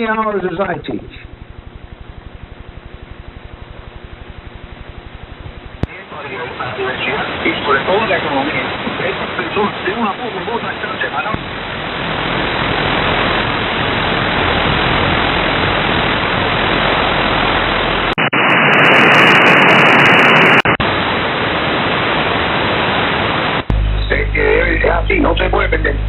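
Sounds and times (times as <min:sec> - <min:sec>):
radio static: 0:00.0 - 0:21.5, 0:22.3 - 0:26.0.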